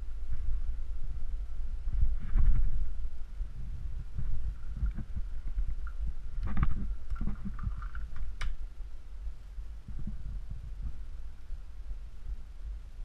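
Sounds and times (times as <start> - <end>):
low rumbling handling noise: 0.0 - 13.0.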